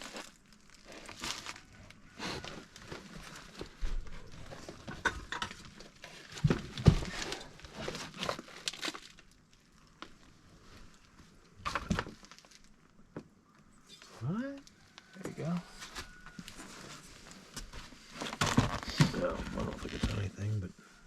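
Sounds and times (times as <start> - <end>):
rustling and crinkling: 0.0 - 21.0
clicks and knocks of handled items: 2.5 - 9.0.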